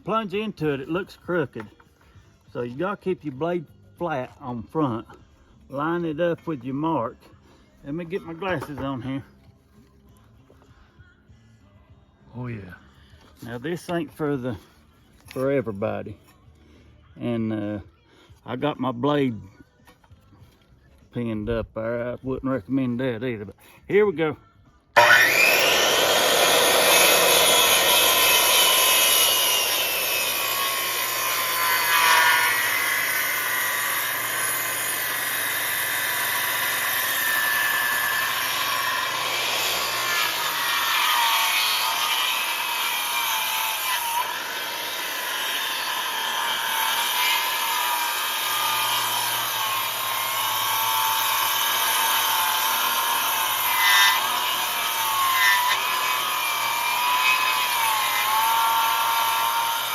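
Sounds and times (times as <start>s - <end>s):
circular saw cutting timber: 25.0s - 59.9s.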